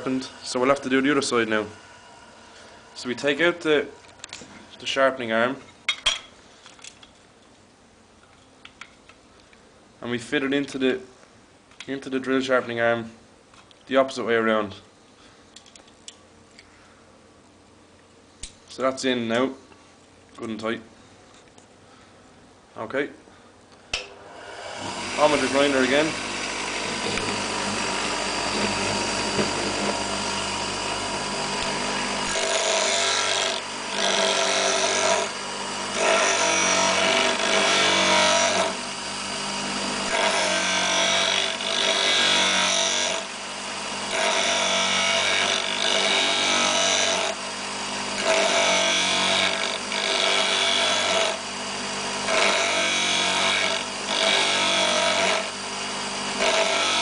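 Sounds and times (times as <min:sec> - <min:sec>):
electric grinder running: 0:24.1 - 0:57.0
drill bit grinding on wheel: 0:24.6 - 0:57.0.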